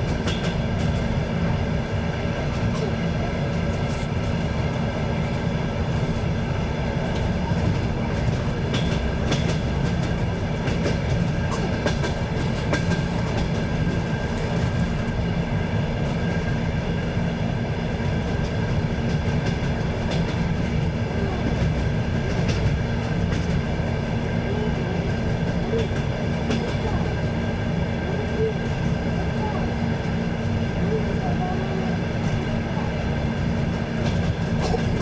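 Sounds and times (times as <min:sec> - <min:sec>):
train wheels rumbling on rails: 0:00.0 - 0:35.0
wheels clicking over rail joints: 0:33.7 - 0:35.0.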